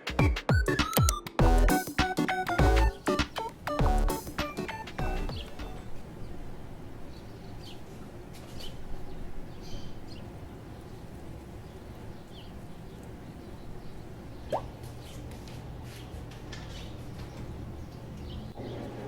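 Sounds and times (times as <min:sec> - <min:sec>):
faint bird chirps: 0:04.5 - 0:15.3.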